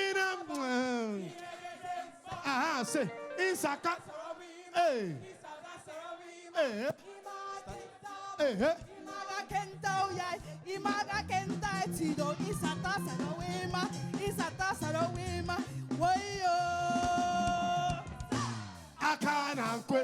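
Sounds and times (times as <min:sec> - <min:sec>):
person singing: 0:02.3 - 0:05.3, 0:06.6 - 0:20.0
band playing: 0:09.9 - 0:19.9.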